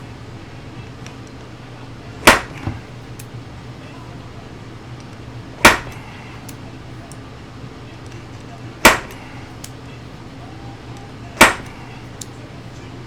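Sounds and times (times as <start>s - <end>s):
hammer blows on metal: 5.6s - 6.3s, 8.8s - 9.5s, 11.3s - 12.1s.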